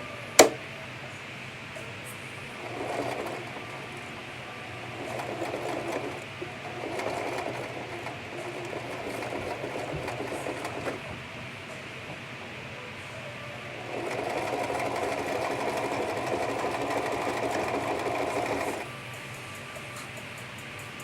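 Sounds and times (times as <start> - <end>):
sewing machine stitching: 0.4 - 0.6, 2.6 - 11.3, 13.7 - 18.9.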